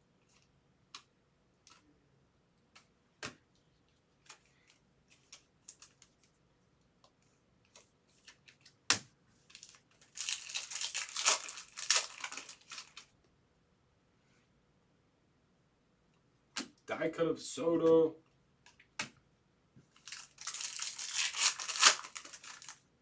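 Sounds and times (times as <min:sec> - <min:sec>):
wrapper crinkling and tearing: 0:09.5 - 0:13.1, 0:20.0 - 0:22.9.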